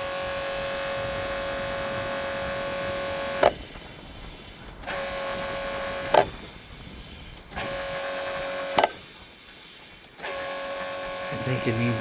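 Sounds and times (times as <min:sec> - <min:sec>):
electric buzz: 0:00.0 - 0:12.0
sharp click: 0:03.3 - 0:05.1, 0:06.0 - 0:07.8, 0:08.4 - 0:10.4.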